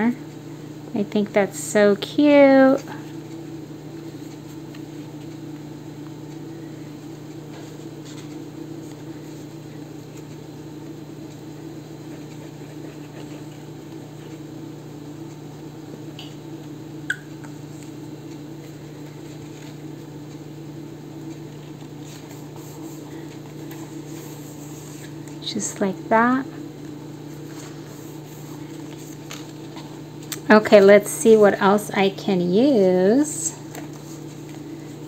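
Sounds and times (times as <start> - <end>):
low electrical hum: 0.0 - 35.0.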